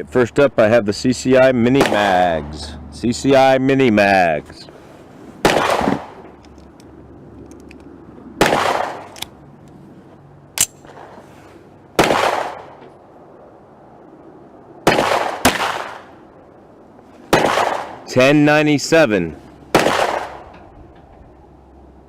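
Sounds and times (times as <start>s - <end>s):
pistol shots with echo: 1.8s - 2.3s, 5.4s - 6.2s, 8.4s - 9.2s, 12.0s - 12.8s, 14.8s - 16.2s, 17.3s - 18.1s, 19.7s - 20.5s
sharp click: 10.6s - 10.9s.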